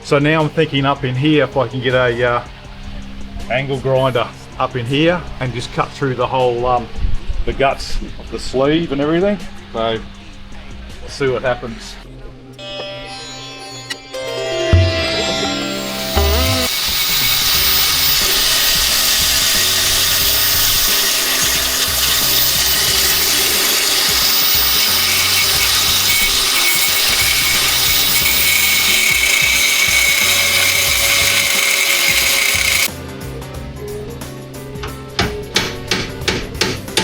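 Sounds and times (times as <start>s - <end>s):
angle grinder cutting steel: 14.8s - 32.9s.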